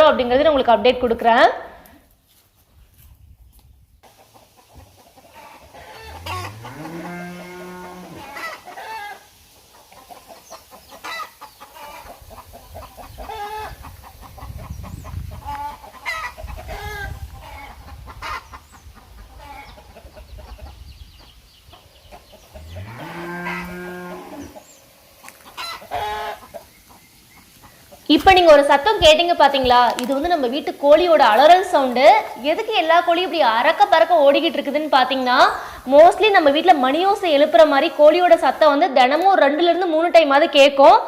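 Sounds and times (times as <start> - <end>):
chickens giving alarm cries: 4.1 - 20.8, 21.7 - 29.2
cow mooing: 5.8 - 8.4, 22.6 - 24.6.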